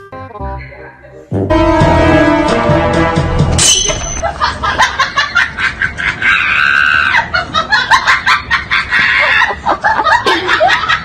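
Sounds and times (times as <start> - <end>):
shrill cry: 6.2 - 7.3.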